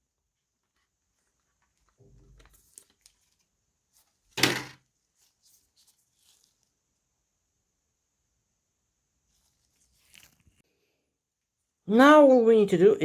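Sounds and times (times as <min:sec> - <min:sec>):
handling noises inside laptop: 0:00.4 - 0:07.1, 0:09.2 - 0:10.6
memory module clacking into slot: 0:04.4 - 0:04.8.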